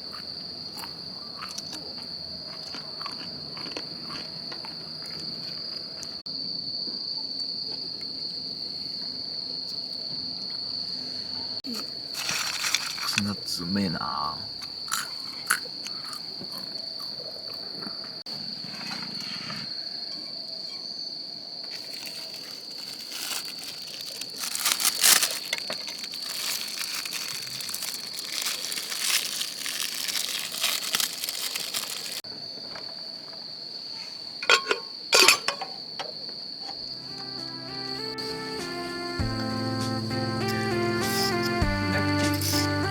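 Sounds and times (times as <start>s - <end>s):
insects chirring: 0.0s - 42.9s
crinkling and rustling: 11.7s - 13.5s, 21.7s - 33.0s.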